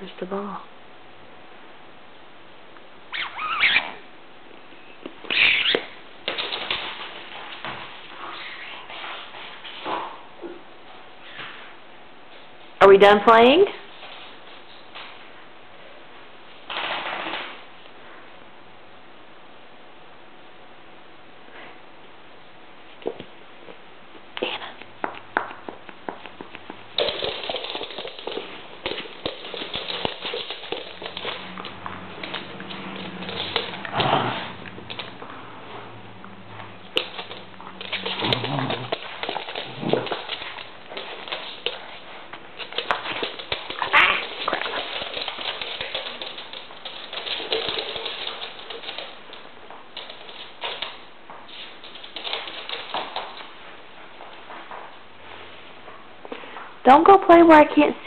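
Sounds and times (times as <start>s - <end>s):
dog claws clicking on floor: 5.0s - 9.2s, 24.8s - 35.4s, 36.2s - 53.6s.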